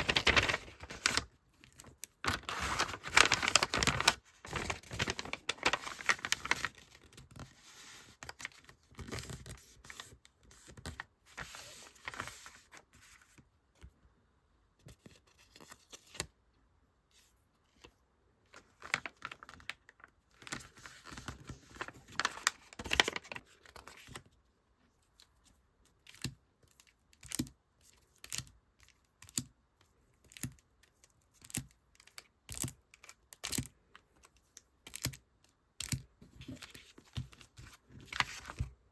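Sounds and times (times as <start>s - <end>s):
packaging tearing and crinkling: 2.3s - 6.6s.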